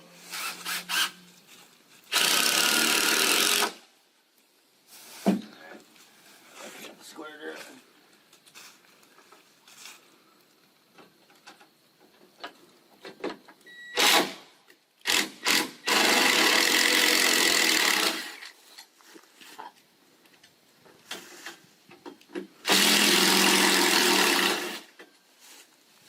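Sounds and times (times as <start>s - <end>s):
cordless drill driving a screw: 0.3s - 1.2s, 2.1s - 3.8s, 14.0s - 14.4s, 15.0s - 18.5s, 22.6s - 24.9s.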